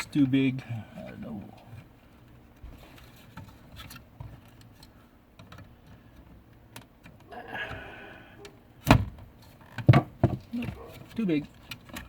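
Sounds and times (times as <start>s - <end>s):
faint clicks of plastic parts: 1.0s - 7.8s.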